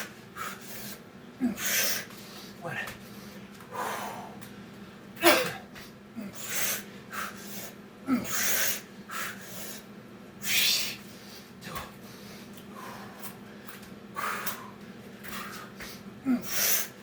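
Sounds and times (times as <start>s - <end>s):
man breathing hard: 0.0s - 5.0s, 5.8s - 17.0s
man grunting: 1.4s - 2.0s, 2.6s - 3.0s, 8.0s - 8.6s, 16.2s - 16.6s.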